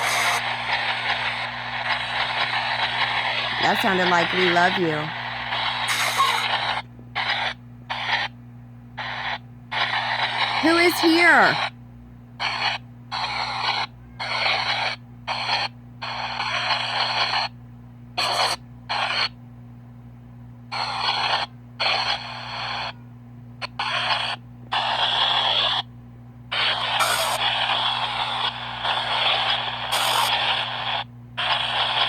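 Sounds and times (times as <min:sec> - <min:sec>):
choppy radio static and fragments: 0:00.0 - 0:08.3, 0:09.0 - 0:11.7, 0:26.6 - 0:32.0.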